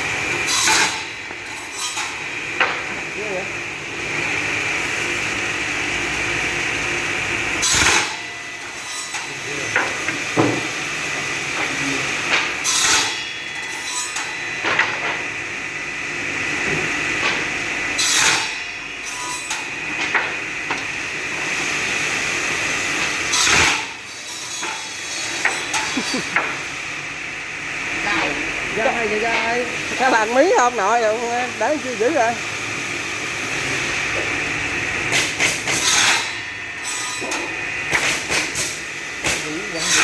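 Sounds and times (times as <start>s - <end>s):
wood-cutting machine running: 2.6s - 40.0s
loud harsh cutting bursts: 37.9s - 40.0s.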